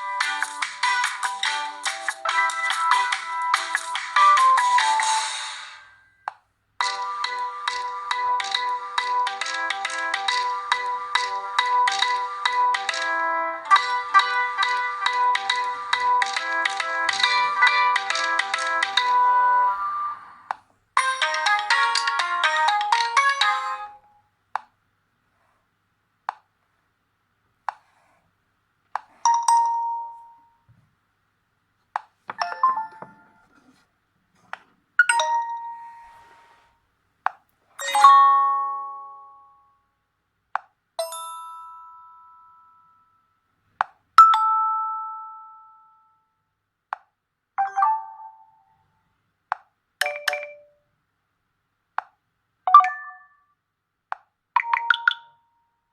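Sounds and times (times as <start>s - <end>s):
phone ringtone: 13.7s - 20.4s, 32.4s - 33.5s, 35.0s - 36.6s, 47.6s - 48.8s, 50.0s - 50.8s, 52.7s - 53.5s
phone chimes and dings: 32.3s - 33.5s, 47.6s - 48.7s, 50.0s - 50.8s, 52.7s - 53.5s, 54.6s - 55.5s.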